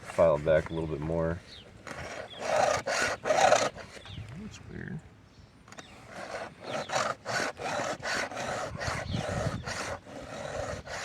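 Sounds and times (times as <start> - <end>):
file rasping on chainsaw chain: 1.9 - 4.0, 6.0 - 11.0.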